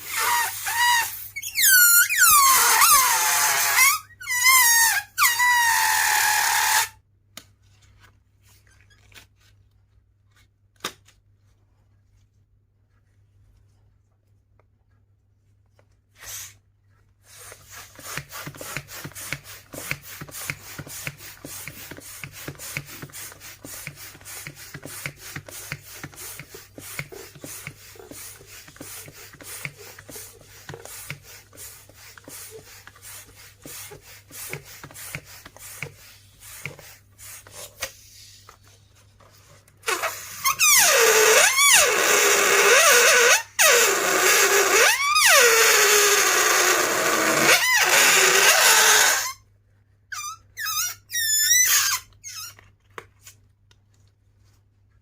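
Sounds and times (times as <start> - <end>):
balloon air squealing out: 0.0 - 7.0, 16.2 - 16.6, 17.2 - 37.9, 39.8 - 49.5, 50.1 - 52.6
balloons clicking and rubbing: 0.0 - 7.6, 15.7 - 49.4, 50.1 - 53.9.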